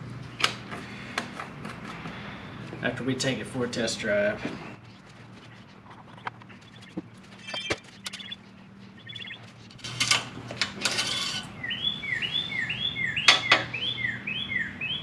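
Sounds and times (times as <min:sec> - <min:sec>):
songbird whistling: 0:06.6 - 0:08.4, 0:09.0 - 0:09.4, 0:11.6 - 0:15.0.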